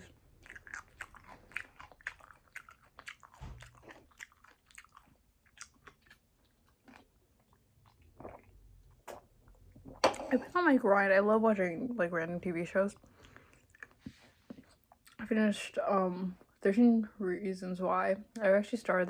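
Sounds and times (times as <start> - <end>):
person chewing food: 0.0 - 9.8, 13.0 - 15.2.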